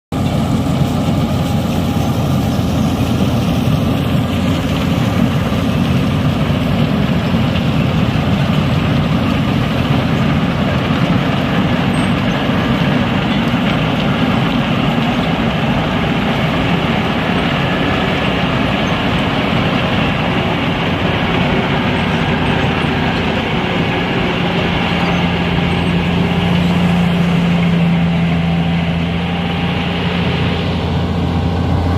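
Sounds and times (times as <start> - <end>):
milling machine grinding asphalt: 0.1 - 31.9.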